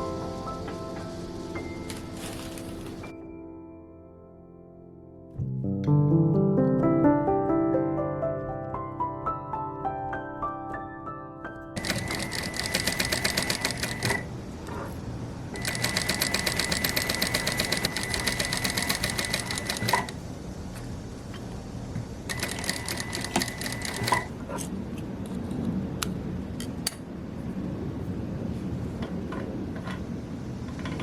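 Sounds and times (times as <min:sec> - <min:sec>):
sewing machine stitching: 0:11.8 - 0:14.3, 0:15.5 - 0:20.2, 0:22.3 - 0:24.3.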